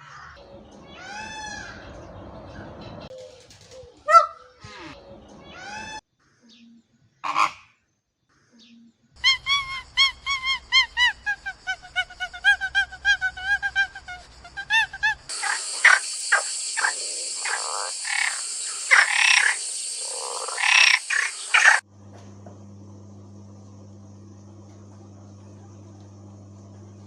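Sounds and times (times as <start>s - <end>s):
steady high hiss: 15.3s - 21.8s.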